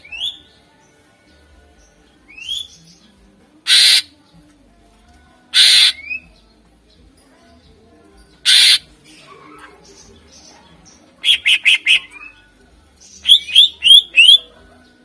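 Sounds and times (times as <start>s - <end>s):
bird harsh rasping notes: 3.6s - 4.1s, 5.5s - 6.2s, 8.4s - 10.5s, 11.2s - 12.4s.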